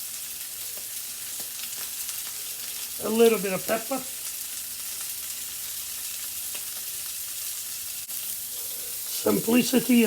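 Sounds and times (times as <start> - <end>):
sausage sizzling in a pan: 0.0 - 10.0.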